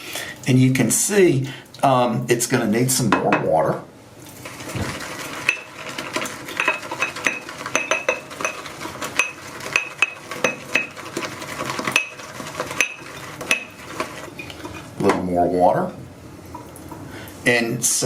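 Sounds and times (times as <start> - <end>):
brush clinking against bowl: 5.4 - 14.9
brush swishing in wet soap: 8.6 - 15.0.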